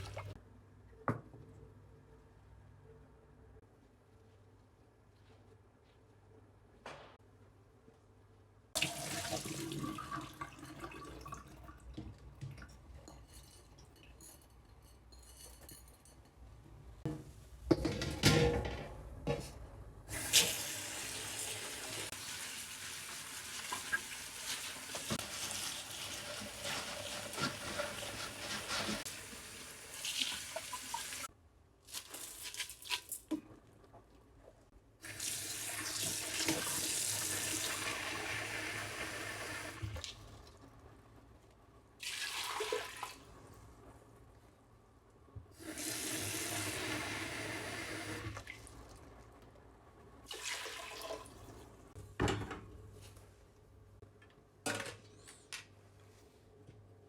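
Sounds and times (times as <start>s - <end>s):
tap water running into sink: 8.8s - 12.6s.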